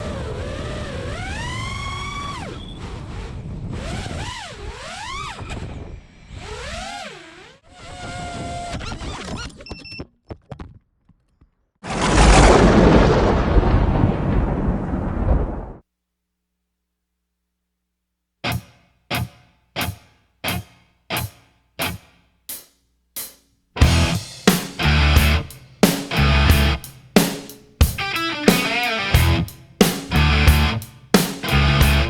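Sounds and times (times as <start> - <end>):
loud dense rushing noise: 28.5 - 32.0.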